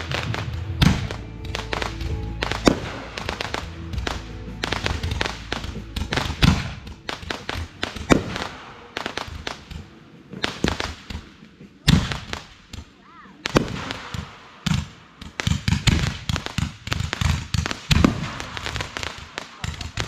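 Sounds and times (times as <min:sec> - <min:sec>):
music: 0:00.0 - 0:10.7
fireworks bangs and crackles: 0:00.0 - 0:20.0.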